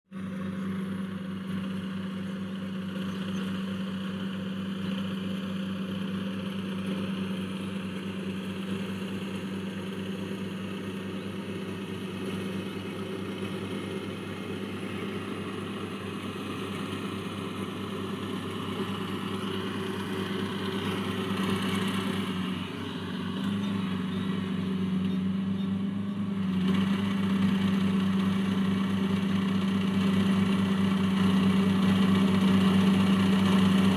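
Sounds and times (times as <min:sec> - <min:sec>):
diesel engine running: 0:00.1 - 0:33.9.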